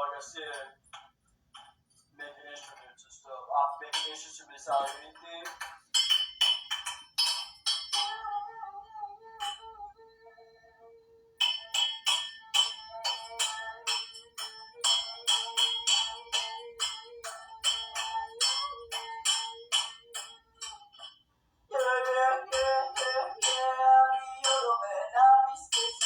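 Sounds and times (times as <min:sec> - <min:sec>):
ringing metallic strikes: 0:03.9 - 0:08.4, 0:11.4 - 0:26.0.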